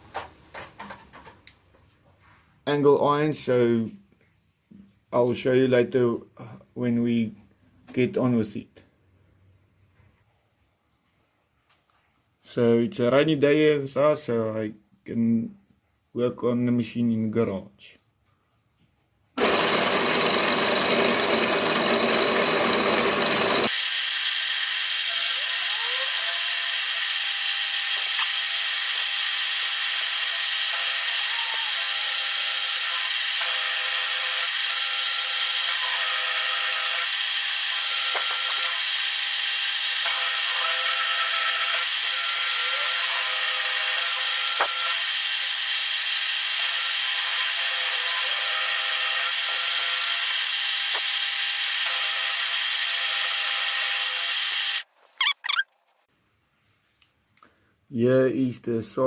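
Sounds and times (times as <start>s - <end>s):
power tool machining steel: 19.4s - 54.8s.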